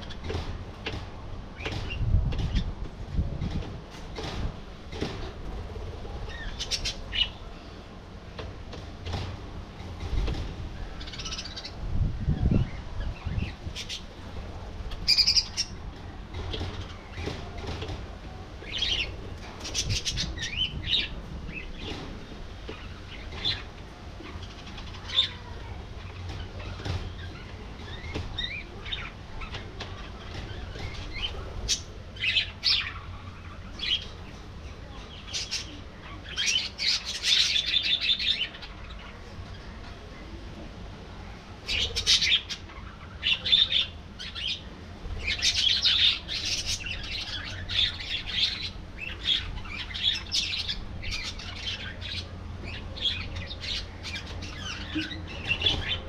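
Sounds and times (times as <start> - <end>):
budgerigars chirping: 15.1 - 15.8.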